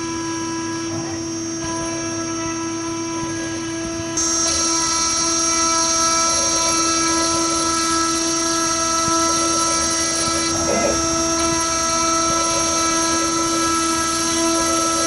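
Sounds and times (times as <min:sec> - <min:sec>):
machine whine: 0:00.0 - 0:15.0
high hiss: 0:04.2 - 0:15.0.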